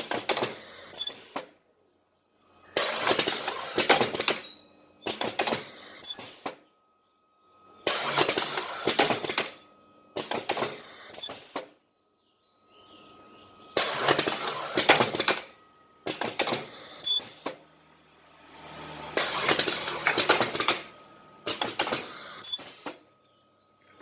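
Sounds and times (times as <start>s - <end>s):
weld burst with high whine: 0.9s - 1.8s, 6.0s - 6.8s, 11.1s - 12.0s, 17.0s - 17.9s, 22.2s - 23.3s.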